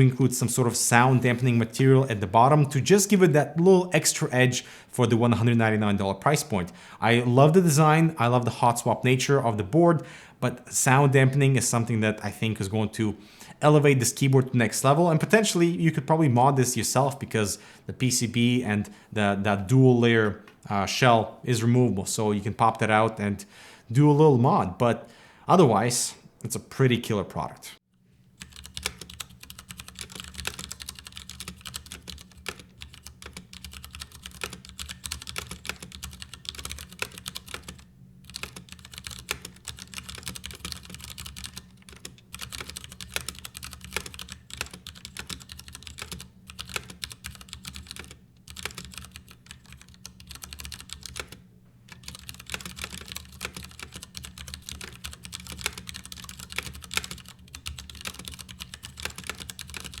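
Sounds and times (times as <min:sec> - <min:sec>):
mechanical keyboard typing: 0:28.4 - 1:00.0.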